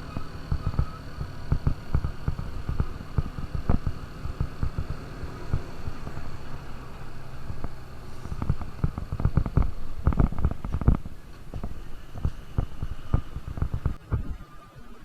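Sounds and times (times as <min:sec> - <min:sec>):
low thuds: 0:00.0 - 0:14.4
motorcycle engine running: 0:00.0 - 0:14.4.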